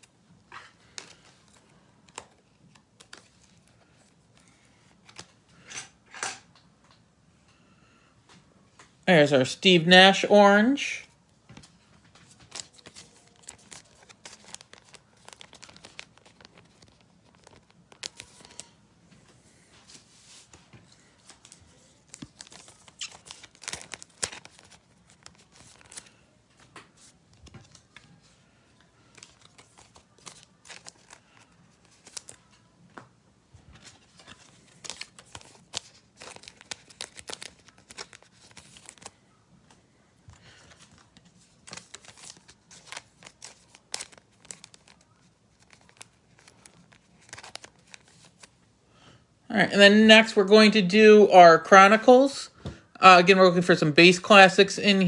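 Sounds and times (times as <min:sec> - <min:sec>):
thin plastic crinkling: 0:11.5 - 0:18.8, 0:19.5 - 0:48.6.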